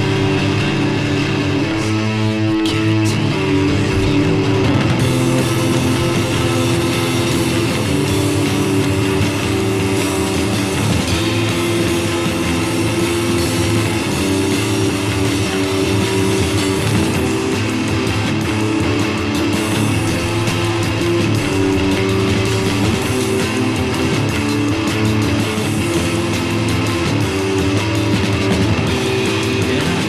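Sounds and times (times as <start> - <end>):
bass: 0.0 - 30.0
cymbals: 0.0 - 30.0
drum kit: 0.0 - 30.0
loud electric guitars: 0.0 - 30.0.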